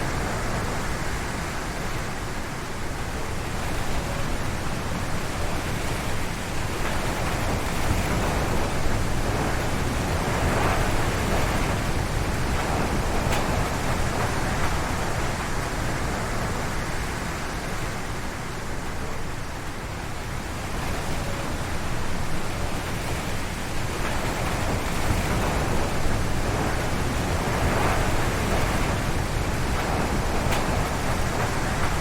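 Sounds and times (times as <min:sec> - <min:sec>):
wind gusting through trees: 0:00.0 - 0:32.0
wind rumble on microphone: 0:00.0 - 0:32.0.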